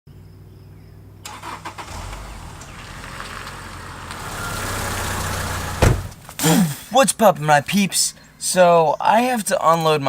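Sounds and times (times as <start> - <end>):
car engine idling: 1.2 - 6.9.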